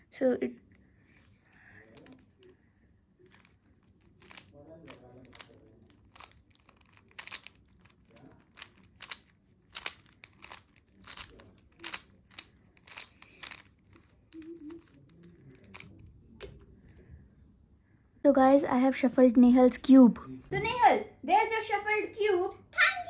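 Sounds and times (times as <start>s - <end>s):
puzzle cube plastic clicks: 3.3s - 16.7s.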